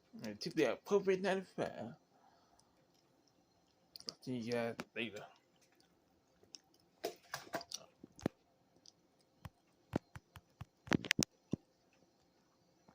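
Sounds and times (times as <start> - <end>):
irregular clicks and taps: 7.6 - 11.6.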